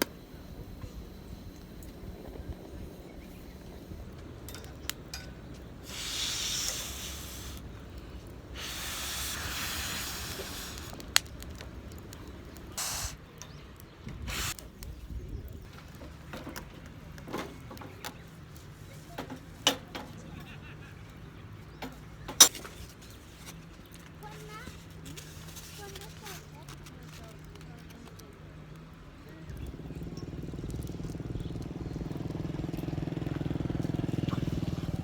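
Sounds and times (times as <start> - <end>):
rice hissing and sizzling: 0.0 - 13.4, 14.2 - 14.8
camp stove rumble: 0.0 - 28.3, 29.4 - 35.0.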